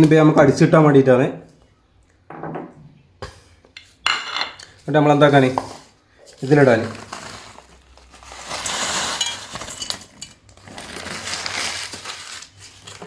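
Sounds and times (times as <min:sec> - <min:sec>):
sugar and onions rattling in jar: 0:04.3 - 0:13.0.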